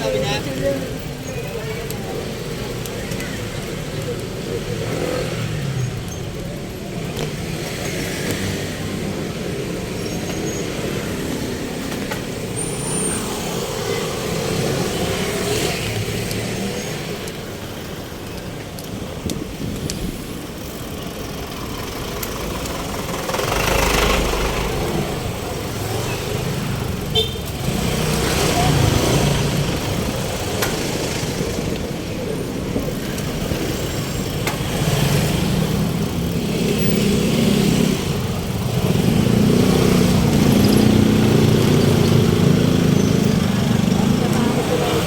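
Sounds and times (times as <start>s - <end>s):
motor vehicles passing: 0.0s - 45.0s.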